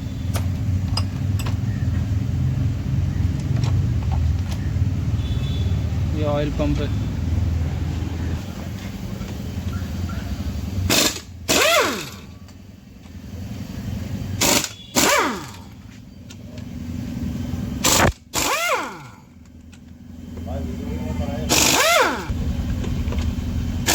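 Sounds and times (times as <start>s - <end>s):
power tool bursts: 10.8s - 12.3s, 14.4s - 15.8s, 17.8s - 19.3s, 21.5s - 22.3s
steady low hum: 15.4s - 23.9s.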